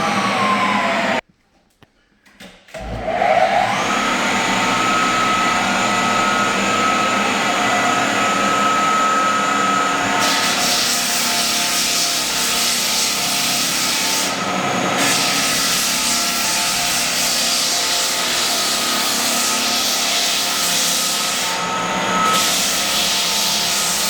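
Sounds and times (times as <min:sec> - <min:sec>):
floor sander motor whine: 0:00.0 - 0:01.2, 0:02.8 - 0:24.0
sanding hiss on wood floor: 0:10.0 - 0:24.0.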